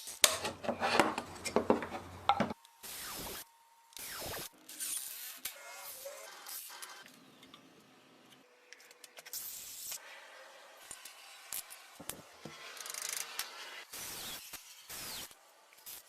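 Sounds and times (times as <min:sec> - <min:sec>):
bursts of hiss: 0:13.8 - 0:16.0.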